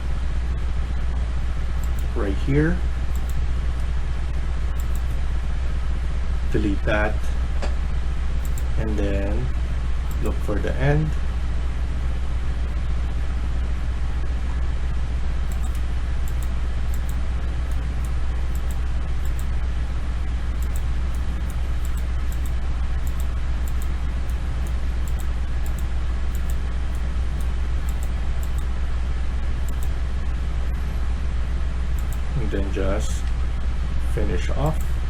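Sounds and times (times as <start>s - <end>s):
low hum: 0.0s - 35.0s
computer mouse clicks: 1.8s - 2.2s, 3.0s - 3.9s, 4.7s - 5.2s, 8.4s - 8.8s, 10.0s - 10.6s, 15.5s - 19.5s, 20.6s - 28.7s, 29.6s - 30.0s, 31.9s - 32.3s.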